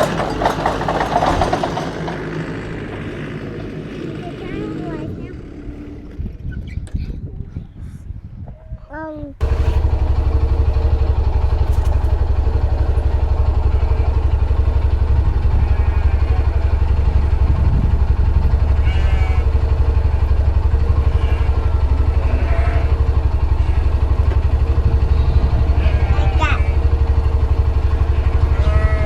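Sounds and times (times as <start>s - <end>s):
vehicle engine running: 0.0s - 6.6s, 9.4s - 29.0s.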